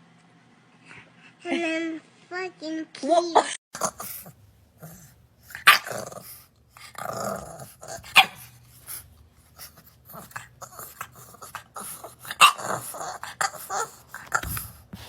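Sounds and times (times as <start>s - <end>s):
puppy growling: 3.8s - 15.0s.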